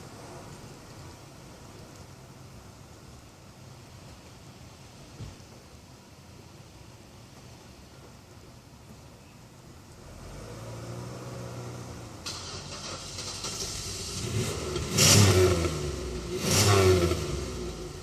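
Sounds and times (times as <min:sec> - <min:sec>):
car engine revving: 0:10.0 - 0:18.0.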